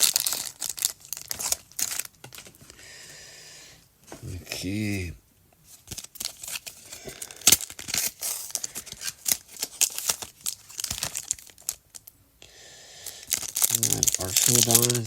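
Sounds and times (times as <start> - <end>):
foil wrapper crinkling and tearing: 0.0 - 2.8, 5.7 - 12.1, 13.0 - 15.0.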